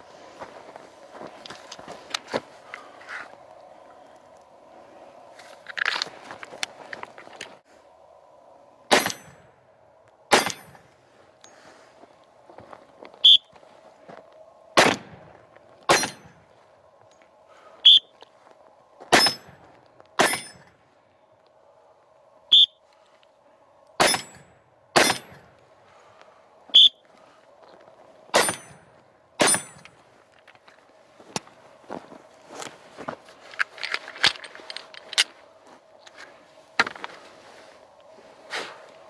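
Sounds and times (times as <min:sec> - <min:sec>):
pistol shots: 0:08.9 - 0:09.3, 0:14.8 - 0:15.2, 0:24.0 - 0:24.4, 0:25.0 - 0:25.4
sharp ringing cracks: 0:08.9 - 0:09.5, 0:10.3 - 0:10.8, 0:15.9 - 0:16.4, 0:19.1 - 0:20.7, 0:24.0 - 0:25.5, 0:28.3 - 0:30.0.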